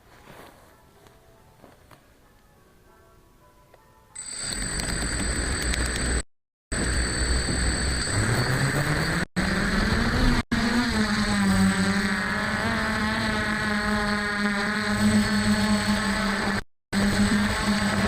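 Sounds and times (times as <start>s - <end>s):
drone motors buzzing: 4.2s - 18.0s.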